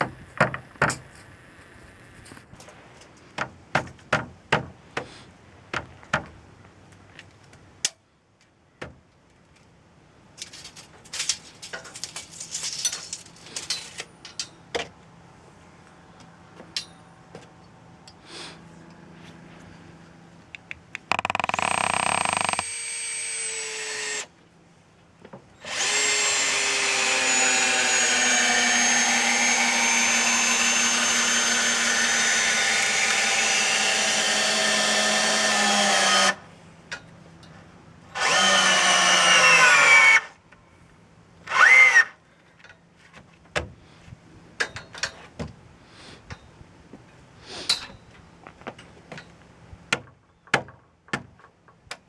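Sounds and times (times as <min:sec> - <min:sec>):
power drill driving screws: 0:21.2 - 0:24.3, 0:25.6 - 0:36.4, 0:38.2 - 0:40.3, 0:41.5 - 0:42.1.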